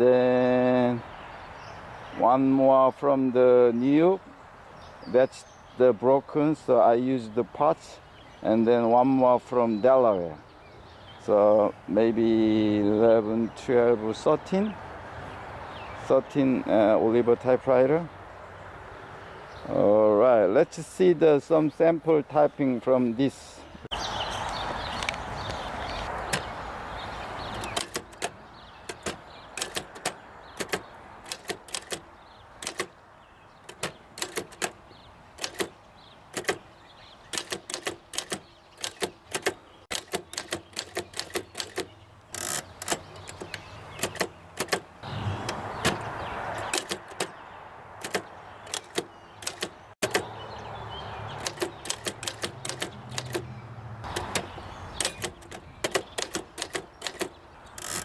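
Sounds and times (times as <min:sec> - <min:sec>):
typewriter keystroke clacks: 0:27.4 - 0:33.0, 0:33.6 - 0:34.8, 0:35.4 - 0:36.7, 0:37.3 - 0:47.4, 0:48.0 - 0:50.3, 0:51.4 - 0:53.5, 0:54.1 - 0:58.0.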